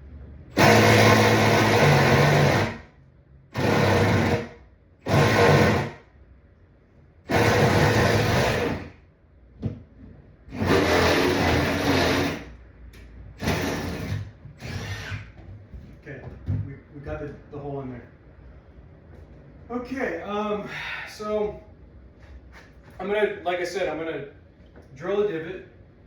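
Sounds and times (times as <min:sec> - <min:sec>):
power drill boring through wood: 0:00.6 - 0:02.8, 0:03.6 - 0:06.0, 0:07.3 - 0:08.9, 0:10.5 - 0:12.5, 0:13.4 - 0:15.3.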